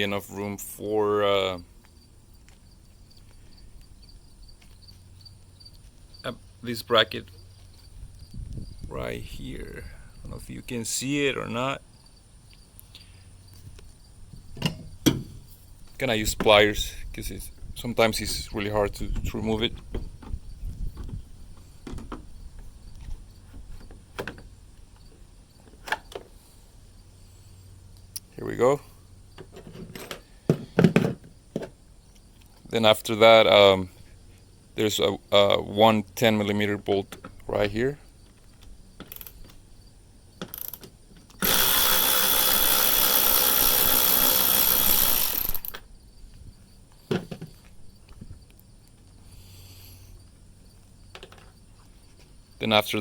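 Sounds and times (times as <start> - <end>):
power drill running: 41.4 - 45.8.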